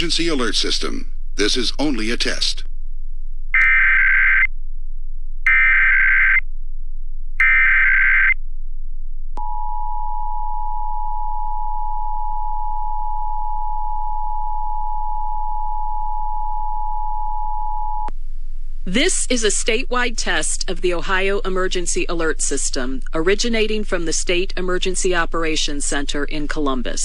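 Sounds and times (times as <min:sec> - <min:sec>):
buzzing data tones: 0:03.6 - 0:04.5, 0:05.5 - 0:06.5, 0:07.4 - 0:08.4.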